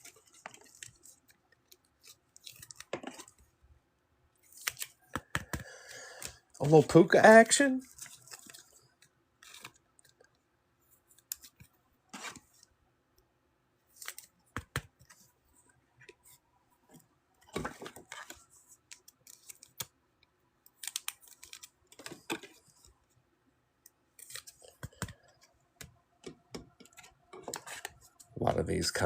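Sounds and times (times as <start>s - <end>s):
cards and wrappers handled: 0.0s - 3.5s, 4.4s - 10.4s, 11.0s - 12.7s, 13.9s - 15.4s, 16.1s - 20.0s, 20.7s - 22.9s, 24.1s - 28.4s.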